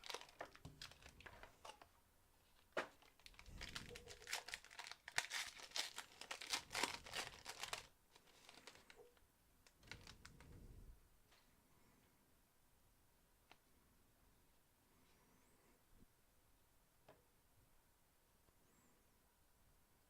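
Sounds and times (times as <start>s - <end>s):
packaging crinkling and tearing: 0.0s - 1.9s, 2.5s - 9.1s, 9.7s - 10.5s.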